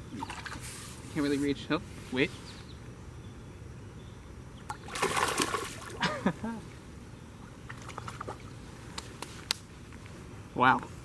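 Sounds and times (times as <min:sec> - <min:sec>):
fish splashing into water: 0:04.7 - 0:06.0.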